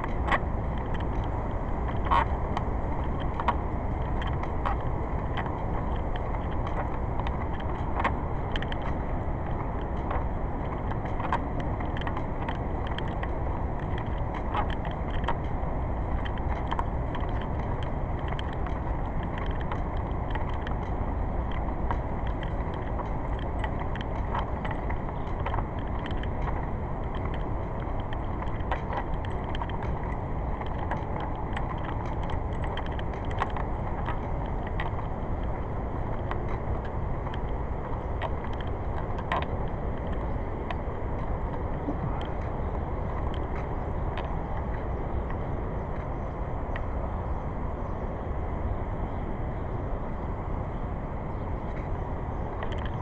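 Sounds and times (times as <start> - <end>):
light clicks and rattles: 0.0 - 53.0
low rumbling noise: 0.0 - 53.0.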